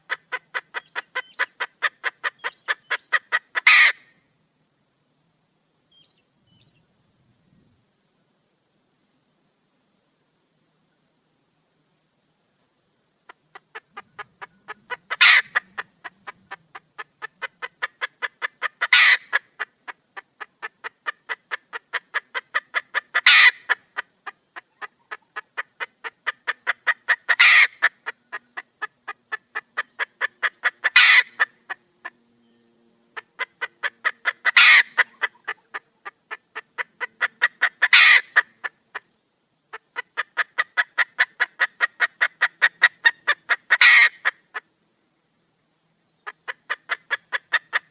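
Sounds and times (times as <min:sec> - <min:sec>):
hen clucking: 0:00.0 - 0:04.1, 0:13.2 - 0:32.2, 0:33.1 - 0:39.1, 0:39.7 - 0:44.7, 0:46.2 - 0:47.9.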